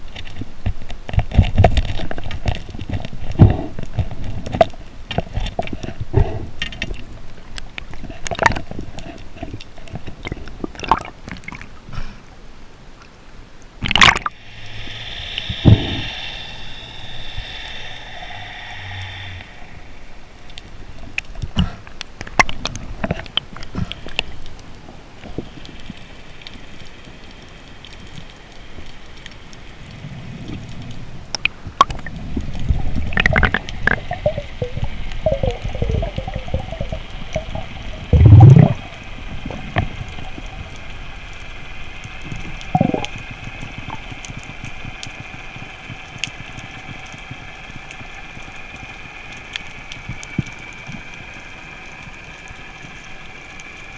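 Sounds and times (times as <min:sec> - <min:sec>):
water sloshing and bubbling: 0:00.0 - 0:53.9
gurgling surge of bubbles: 0:10.2 - 0:11.7, 0:13.8 - 0:21.0, 0:31.7 - 0:40.5, 0:42.6 - 0:43.2
low rumble: 0:14.3 - 0:21.6, 0:31.8 - 0:40.9.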